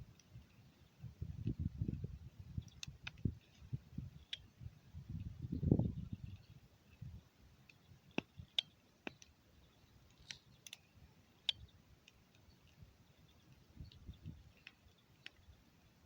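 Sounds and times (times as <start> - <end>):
campfire crackling and popping: 1.4 - 4.5, 7.6 - 9.4, 10.0 - 12.8.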